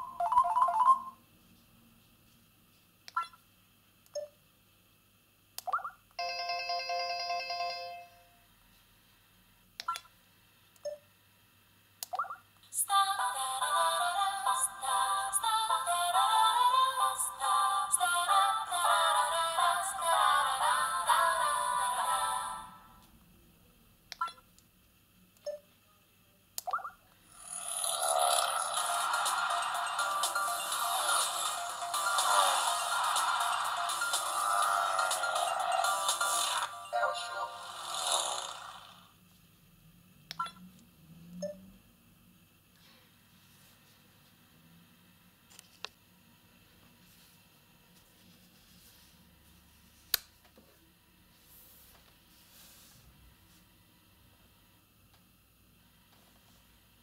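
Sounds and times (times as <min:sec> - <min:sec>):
phone electronic chirps: 0:00.0 - 0:01.2
phone ringtone: 0:00.0 - 0:01.2, 0:06.2 - 0:08.3, 0:28.5 - 0:37.8
steady held electronic tone: 0:27.4 - 0:37.7.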